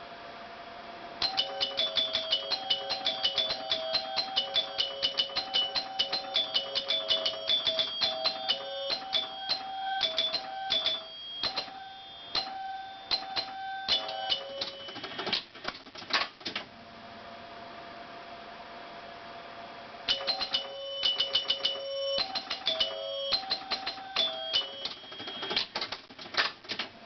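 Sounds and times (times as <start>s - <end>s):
steady hum: 0.0s - 26.2s
pinball chimes ringing: 1.2s - 15.4s, 20.1s - 25.9s
rapid relay clicking: 20.1s - 26.9s.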